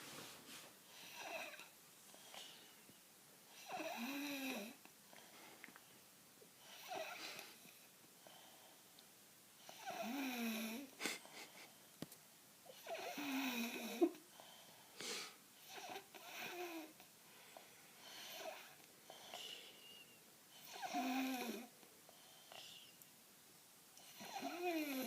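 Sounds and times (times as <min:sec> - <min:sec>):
child snoring loudly: 0:01.0 - 0:01.6, 0:03.6 - 0:04.8, 0:06.7 - 0:07.2, 0:09.7 - 0:10.9, 0:12.8 - 0:14.1, 0:15.6 - 0:17.0, 0:20.6 - 0:21.7, 0:24.1 - 0:25.0.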